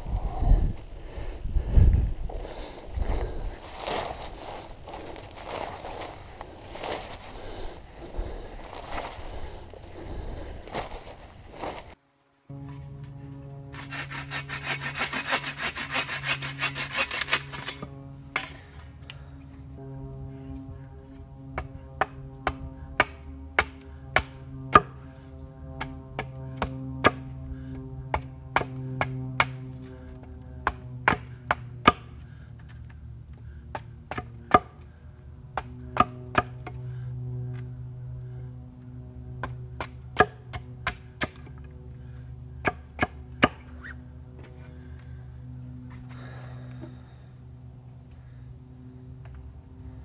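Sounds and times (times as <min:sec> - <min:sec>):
droning background music: 0:00.0 - 0:50.0
axe chopping wood: 0:30.6 - 0:32.1, 0:33.7 - 0:34.8, 0:35.6 - 0:36.8, 0:39.4 - 0:41.5, 0:42.6 - 0:43.6.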